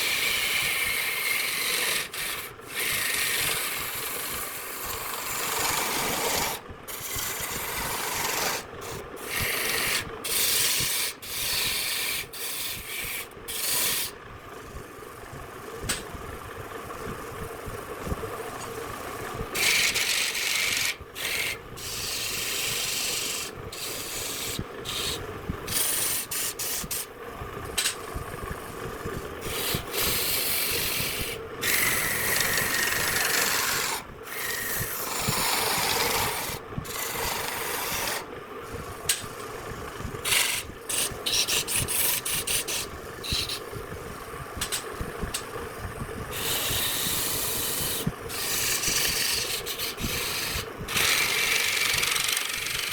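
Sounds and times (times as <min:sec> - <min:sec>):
tool scraping spinning wood: 0:00.0 - 0:14.3, 0:18.3 - 0:27.1, 0:27.7 - 0:52.9
faint steady hum: 0:00.0 - 0:52.9.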